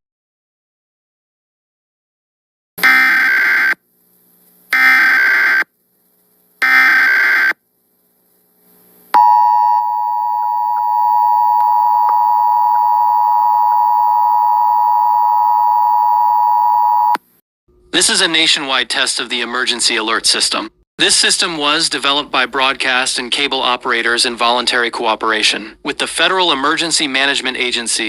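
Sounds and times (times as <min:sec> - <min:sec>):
two-tone attention signal: 0:09.2 - 0:17.2.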